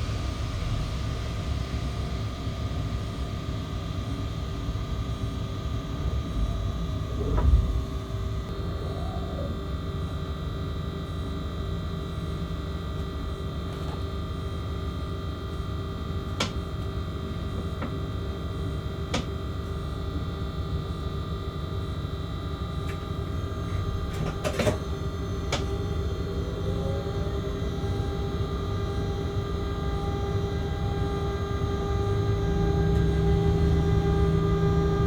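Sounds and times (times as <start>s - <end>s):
locomotive electrical whine: 0.0s - 35.0s
low rumble: 5.7s - 10.0s.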